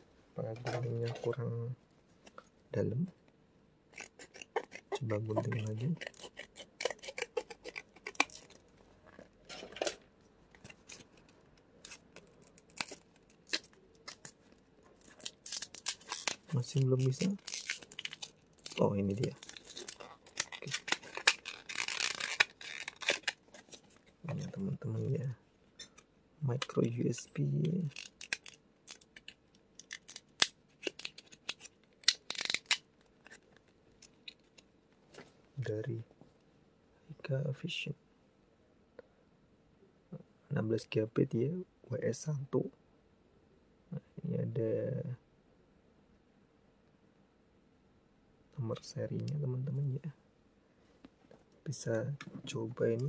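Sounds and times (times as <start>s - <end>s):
scissors snipping packaging: 15.2s - 24.5s
plastic pack clicking and snapping: 17.2s - 23.8s, 27.9s - 34.6s.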